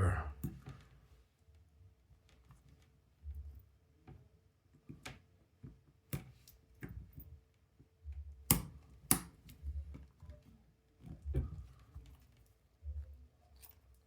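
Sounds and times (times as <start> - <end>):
sharp clicks of small tools: 8.5 - 9.4.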